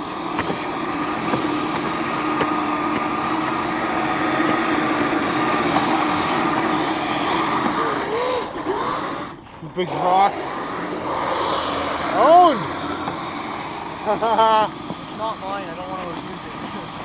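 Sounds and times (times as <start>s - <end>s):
small electric motor whining: 0.0s - 17.0s.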